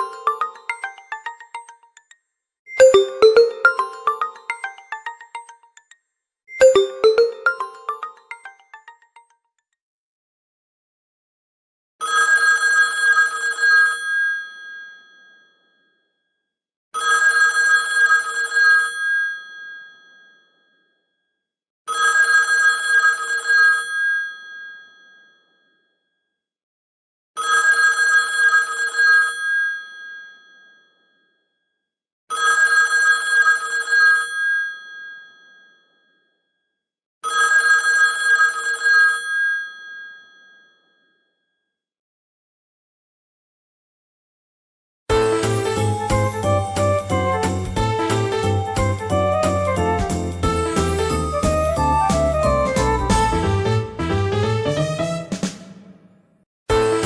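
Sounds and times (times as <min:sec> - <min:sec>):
phone ringtone bell ring: 0:00.0 - 0:02.1, 0:02.7 - 0:05.9, 0:06.6 - 0:09.2.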